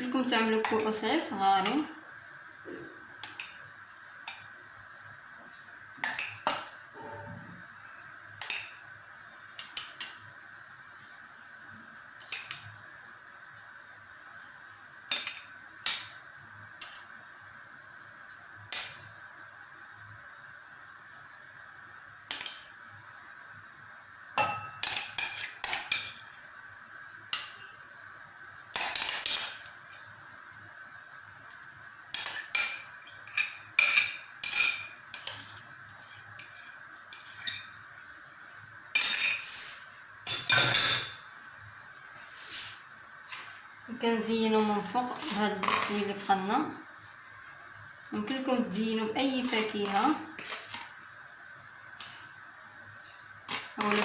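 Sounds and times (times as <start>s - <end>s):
spoon clinking on glass: 24.4s - 25.4s.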